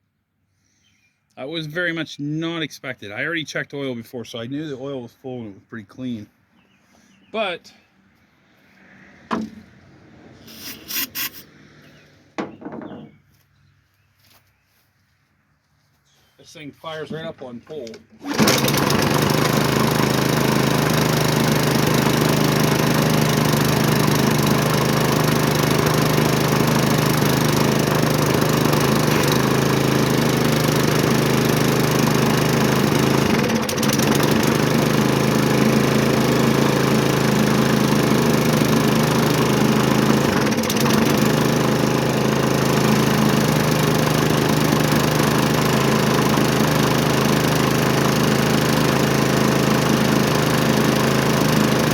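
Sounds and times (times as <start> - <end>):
lawnmower engine running: 8.4 - 13.4, 16.9 - 51.9.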